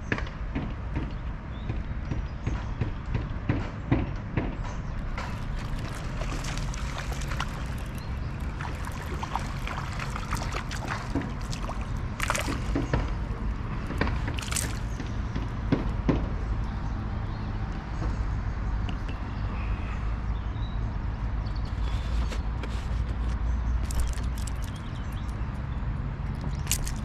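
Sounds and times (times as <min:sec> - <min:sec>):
water trickling and splashing: 0:05.0 - 0:16.8, 0:22.7 - 0:27.0.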